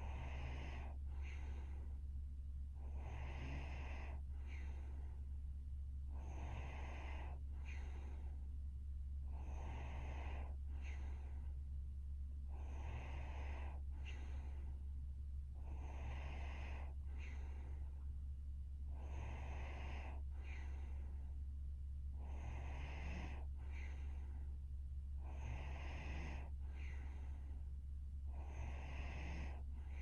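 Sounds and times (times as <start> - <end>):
woman snoring softly: 0.0 - 2.0, 2.8 - 5.3, 6.1 - 8.4, 9.2 - 11.6, 12.4 - 14.8, 15.6 - 18.1, 18.9 - 21.4, 22.1 - 24.5, 25.2 - 27.7, 28.3 - 30.0
steady low hum: 0.0 - 30.0.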